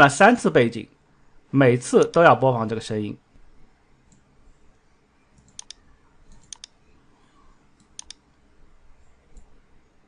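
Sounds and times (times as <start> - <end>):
computer mouse clicking: 4.1 - 4.3, 5.4 - 6.8, 7.8 - 8.2, 9.3 - 9.6.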